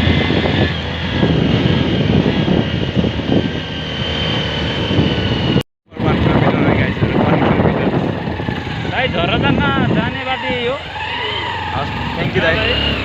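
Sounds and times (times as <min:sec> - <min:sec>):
road noise: 0:00.0 - 0:13.0
rumbling wind: 0:00.0 - 0:13.0.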